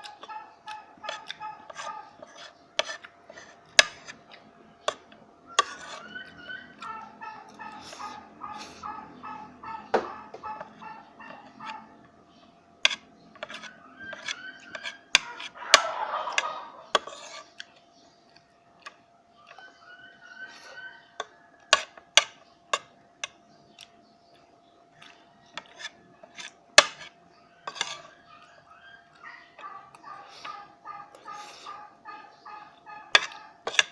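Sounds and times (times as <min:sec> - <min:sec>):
cutlery clinking on a plate: 0:27.7 - 0:28.2, 0:33.2 - 0:33.9.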